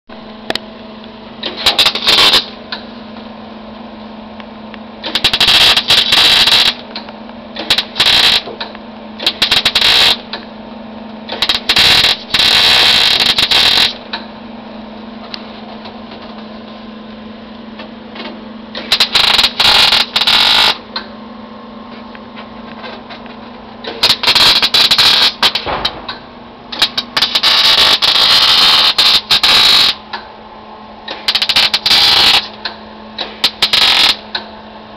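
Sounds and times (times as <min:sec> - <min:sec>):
steady hum: 0:00.1 - 0:34.9
electric welder crackling: 0:01.4 - 0:02.6, 0:05.0 - 0:10.5, 0:11.3 - 0:14.2, 0:18.7 - 0:21.0, 0:23.8 - 0:30.2, 0:31.1 - 0:34.4.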